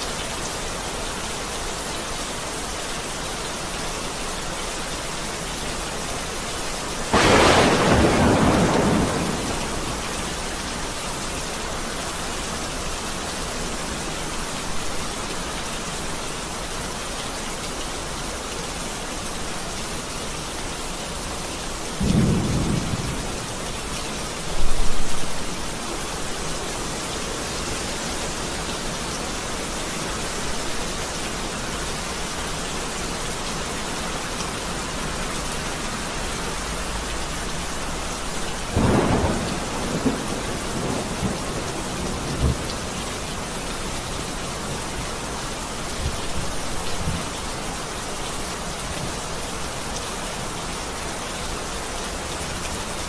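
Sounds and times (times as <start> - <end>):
steady rain: 0.0 - 53.0
thunder clap: 7.1 - 10.4, 38.8 - 42.8
deep thunder rumbles: 7.1 - 10.6, 22.0 - 23.6, 38.8 - 43.0.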